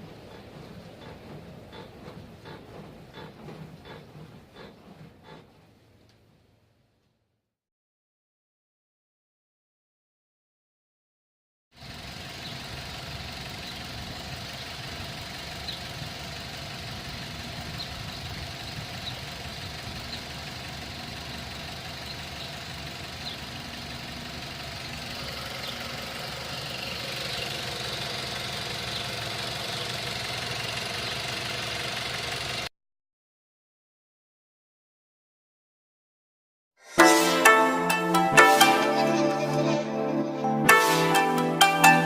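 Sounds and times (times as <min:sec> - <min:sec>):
car engine running: 0:11.8 - 0:32.7.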